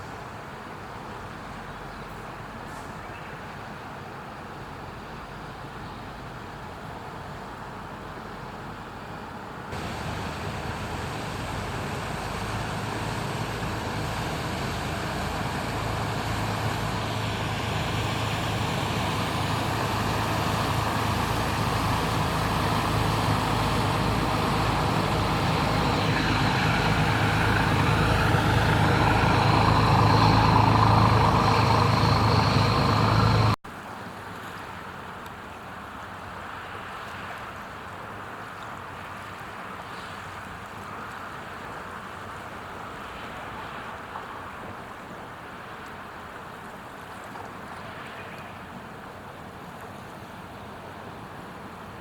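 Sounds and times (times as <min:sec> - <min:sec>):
boat engines humming: 0:04.0 - 0:33.6.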